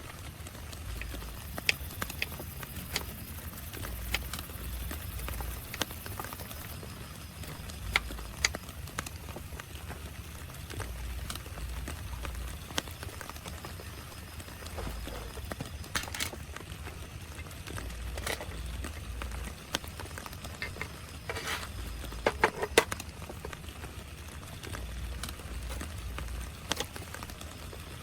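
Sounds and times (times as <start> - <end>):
steady rain: 0.0 - 28.0.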